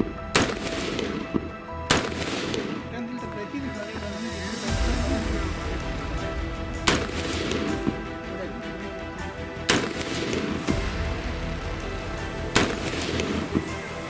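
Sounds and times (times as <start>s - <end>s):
rifle shots: 0.3s - 2.9s, 6.8s - 8.0s, 9.7s - 10.8s, 12.4s - 13.7s.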